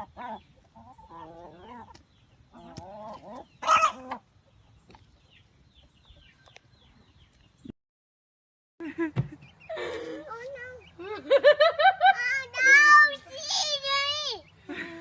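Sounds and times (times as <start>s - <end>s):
chicken squawk: 0.0s - 4.3s
chickens clucking: 0.0s - 7.5s, 9.2s - 11.7s.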